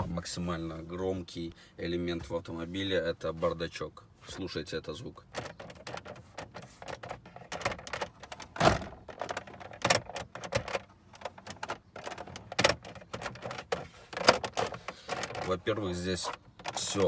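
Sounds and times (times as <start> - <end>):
glovebox thumps: 5.3 - 17.0
plastic glovebox knocking and clicking: 5.3 - 17.0.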